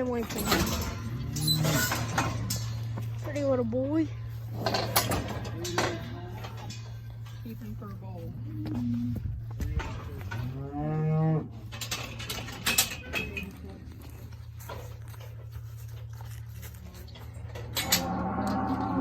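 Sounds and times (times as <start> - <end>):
steady low hum: 0.0 - 19.0
calf bawling: 0.1 - 3.0.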